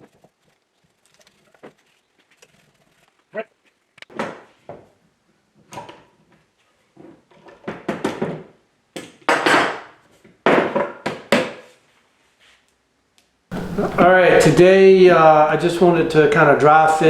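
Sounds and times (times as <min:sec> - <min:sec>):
wood scraping: 0:00.0 - 0:04.0, 0:13.5 - 0:14.8
wooden parts clunking: 0:13.5 - 0:14.5.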